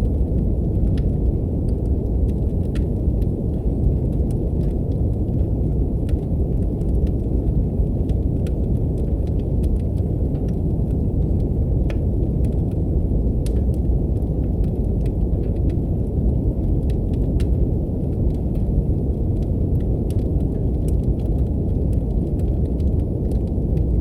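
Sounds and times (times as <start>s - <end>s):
deep brown noise: 0.0s - 24.0s
wood fire crackling: 0.0s - 24.0s.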